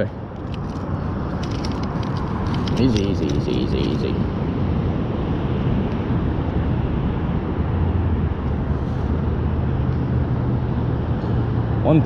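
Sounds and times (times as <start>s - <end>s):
highway traffic hiss: 0.0s - 12.0s.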